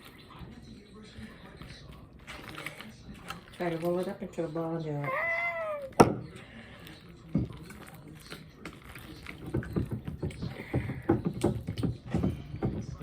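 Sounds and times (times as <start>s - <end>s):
knock: 9.4s - 13.0s.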